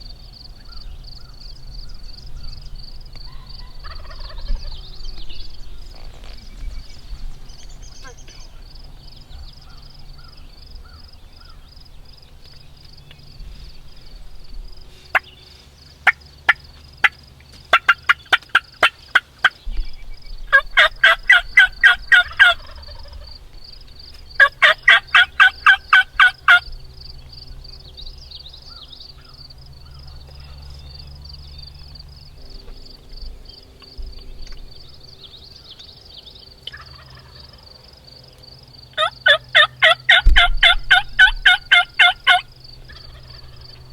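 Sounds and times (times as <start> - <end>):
turkey gobbling: 3.2 - 4.8, 16.0 - 19.6, 20.5 - 23.3, 24.4 - 26.7, 36.6 - 37.6, 39.0 - 43.9.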